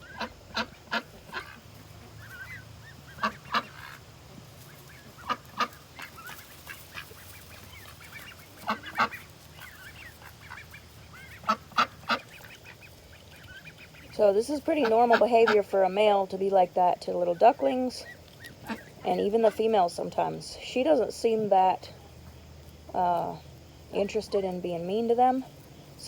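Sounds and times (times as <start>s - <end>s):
faint duckling peeps: 0.0s - 4.0s, 4.6s - 15.9s, 17.3s - 19.6s
ducks quacking: 0.0s - 20.3s.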